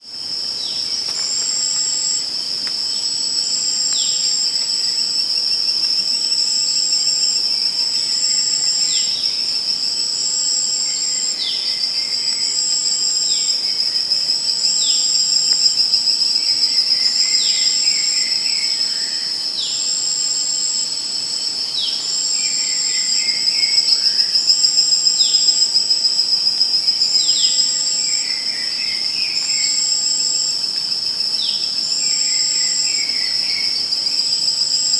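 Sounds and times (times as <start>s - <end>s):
crickets trilling: 0.0s - 34.9s
insect short high chirps: 0.3s - 5.0s.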